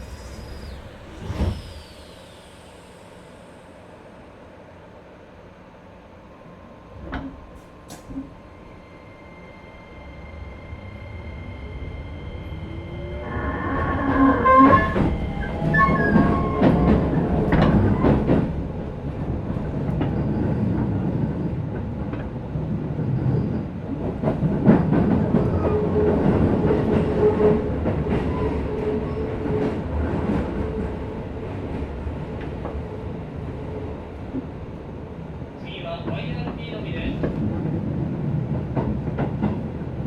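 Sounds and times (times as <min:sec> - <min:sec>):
train wheel rumble: 0:00.0 - 0:40.0.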